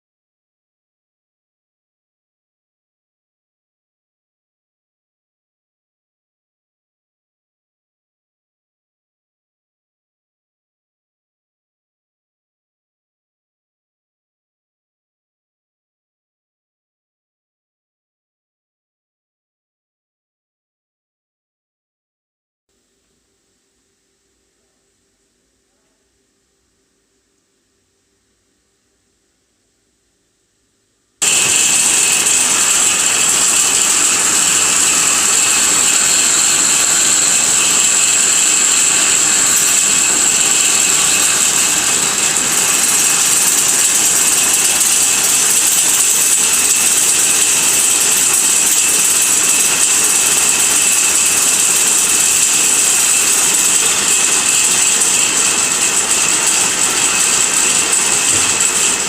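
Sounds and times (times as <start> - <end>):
lathe running with whine: 31.2 - 59.0.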